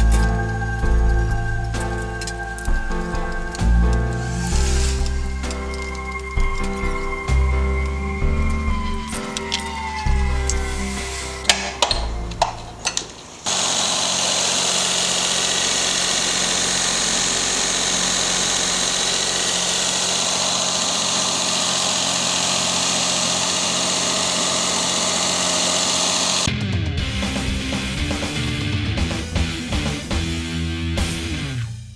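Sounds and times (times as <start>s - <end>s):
machine running steadily: 12.2s - 26.5s.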